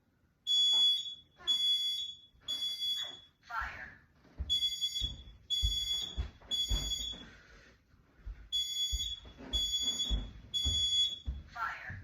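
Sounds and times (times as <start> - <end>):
smoke detector beeping: 0.5 - 3.4, 4.5 - 7.4, 8.5 - 11.5.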